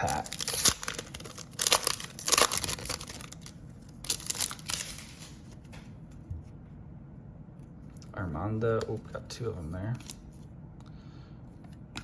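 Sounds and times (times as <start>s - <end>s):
cellophane wrapper crinkling and tearing: 0.0s - 5.5s.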